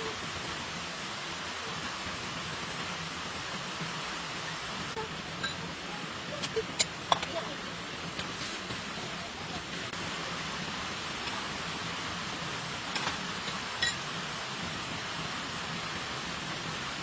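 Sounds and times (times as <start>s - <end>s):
steady rain hiss: 0.0s - 17.0s.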